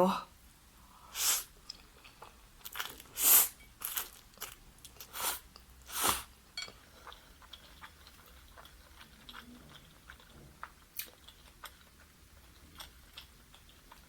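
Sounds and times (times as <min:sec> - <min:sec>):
wet chewing: 0:06.9 - 0:14.0
crispy chicken crunching: 0:07.1 - 0:14.0.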